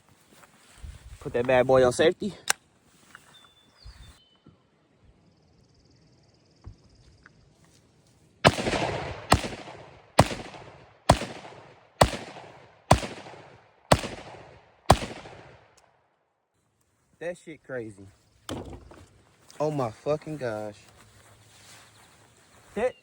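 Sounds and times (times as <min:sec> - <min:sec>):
gunshots with ringing echo: 0:08.4 - 0:15.7.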